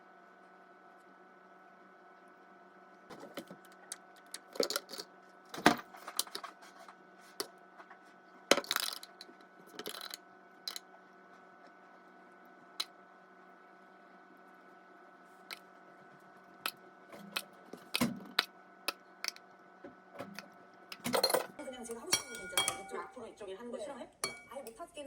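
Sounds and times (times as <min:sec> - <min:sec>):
faint electrical hum: 0:00.0 - 0:25.0
small hard objects clattering: 0:08.5 - 0:10.8.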